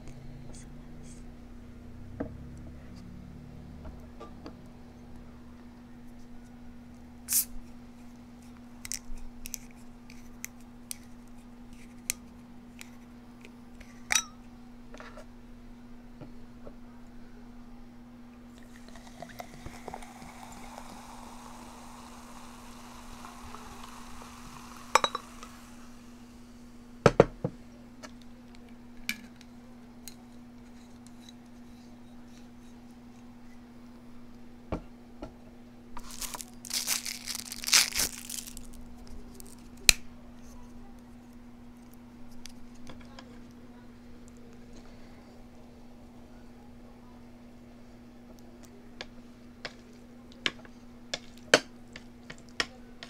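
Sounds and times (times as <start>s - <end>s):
steady low hum: 0.0s - 51.2s
liquid pouring into a glass: 18.6s - 26.2s
glass and tableware clinking: 24.9s - 25.4s
plastic packaging crinkling: 36.0s - 39.7s.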